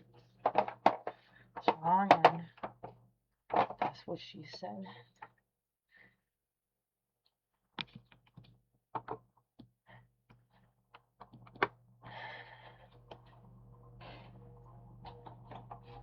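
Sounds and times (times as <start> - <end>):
low steady hum: 11.3 - 16.0.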